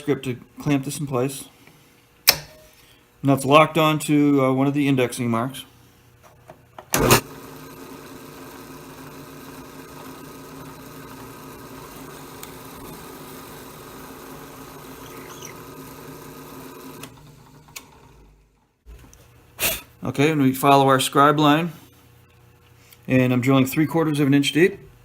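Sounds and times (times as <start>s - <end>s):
drill press switch click: 2.3s - 2.6s
drill press motor boring wood: 7.0s - 18.3s.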